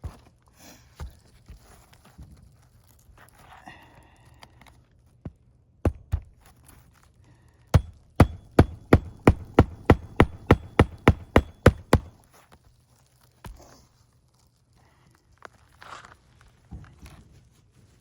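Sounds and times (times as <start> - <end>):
hammer striking shingle roof: 7.8 - 12.1.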